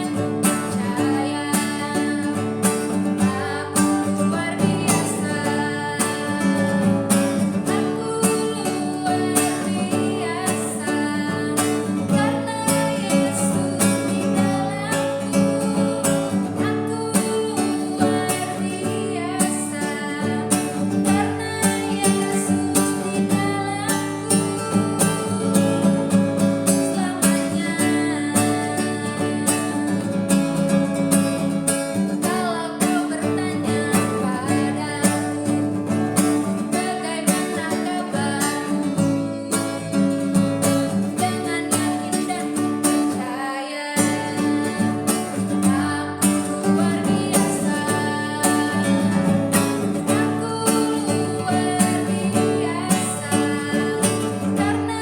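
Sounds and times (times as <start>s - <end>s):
person singing: 0.0s - 55.0s
strummed acoustic guitar: 0.0s - 55.0s.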